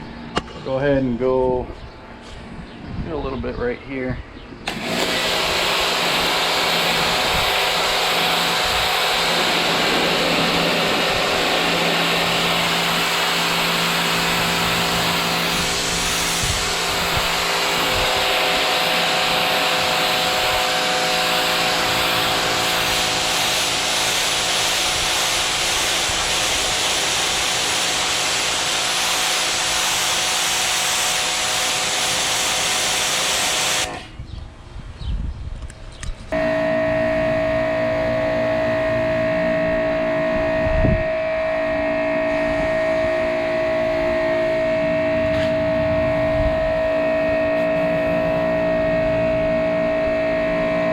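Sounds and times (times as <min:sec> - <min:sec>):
pressure washer motor whine: 0:03.2 - 0:34.4, 0:36.3 - 0:50.9
pressure washer spraying water: 0:04.7 - 0:34.2, 0:41.2 - 0:50.9.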